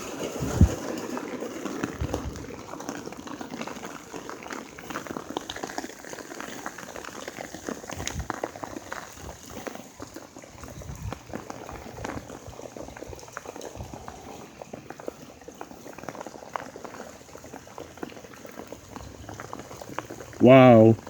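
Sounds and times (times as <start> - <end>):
heavy rain splashing into water: 0.0 - 21.0.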